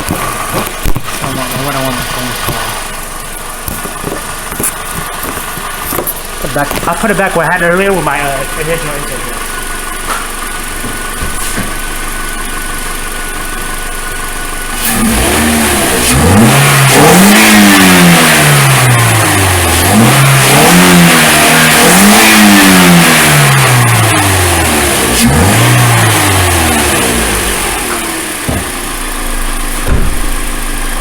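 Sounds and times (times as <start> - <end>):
loud air intake sound: 0.0 - 12.9, 14.6 - 19.8
car engine idling and revving: 0.0 - 31.0.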